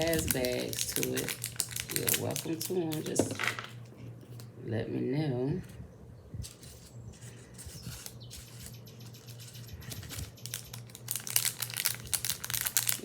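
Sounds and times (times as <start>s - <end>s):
small bags crinkling: 0.0s - 3.8s, 9.4s - 13.0s.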